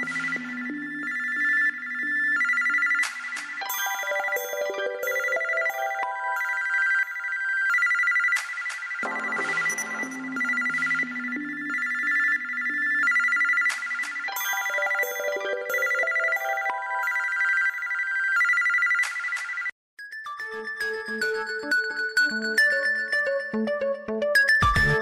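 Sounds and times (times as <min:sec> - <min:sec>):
synthesized ringtone melody: 0:00.0 - 0:25.0
trilling telephone-bell ring: 0:14.4 - 0:20.8.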